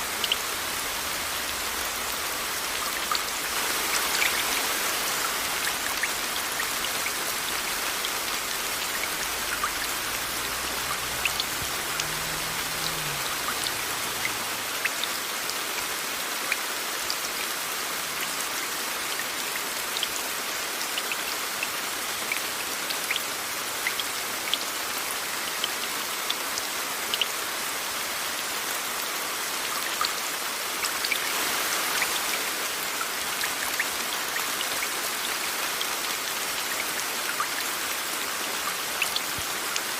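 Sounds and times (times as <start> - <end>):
steady rain: 0.0 - 39.9
raindrops ticking: 5.2 - 15.2.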